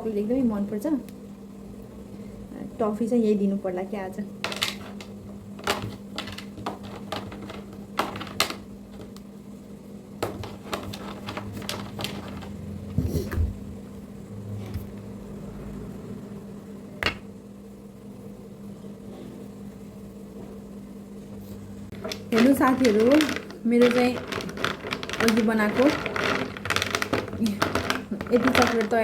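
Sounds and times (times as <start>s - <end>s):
kitchen clicks and knocks: 4.5s - 9.1s, 10.2s - 13.4s, 21.9s - 29.0s.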